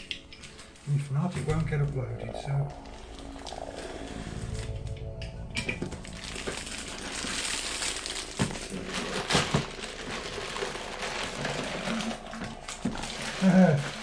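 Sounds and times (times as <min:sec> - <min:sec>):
packaging rustling and crinkling: 0:05.5 - 0:14.0.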